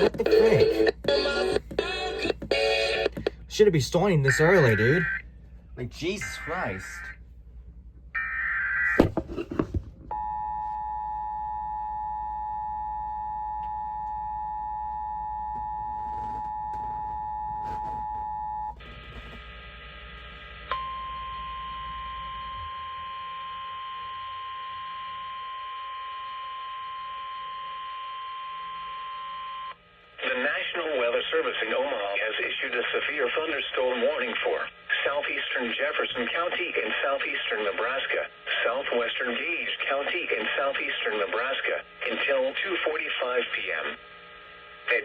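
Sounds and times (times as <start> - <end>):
single-tone warning alarm: 4.0 - 5.3, 8.2 - 9.1, 10.1 - 19.4, 20.7 - 29.8.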